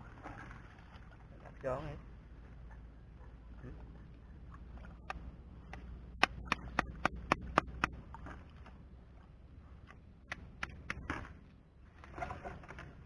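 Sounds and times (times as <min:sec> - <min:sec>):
sharp knocks: 0:06.2 - 0:07.9.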